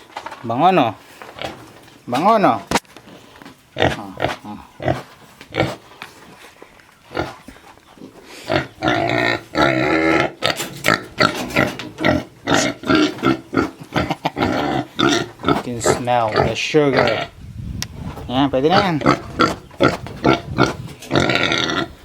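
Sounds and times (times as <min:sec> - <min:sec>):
pigs grunting: 0:03.1 - 0:06.0, 0:07.1 - 0:17.4, 0:18.6 - 0:22.0.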